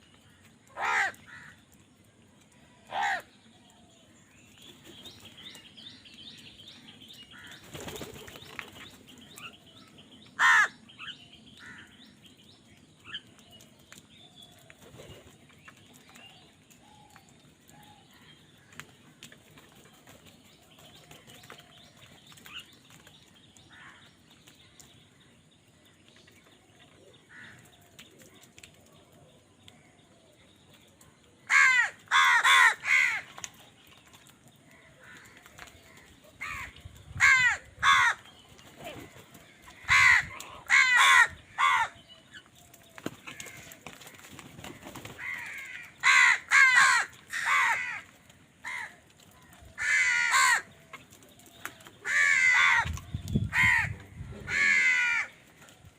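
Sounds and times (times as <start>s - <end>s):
crows cawing: 0.7s - 1.7s, 2.8s - 3.3s, 7.3s - 7.6s, 10.4s - 10.9s, 11.6s - 12.0s, 27.3s - 27.6s, 31.4s - 33.3s, 34.7s - 38.3s, 39.5s - 42.0s, 43.2s - 43.9s, 44.7s - 50.7s, 52.0s - 52.9s, 53.5s - 55.6s.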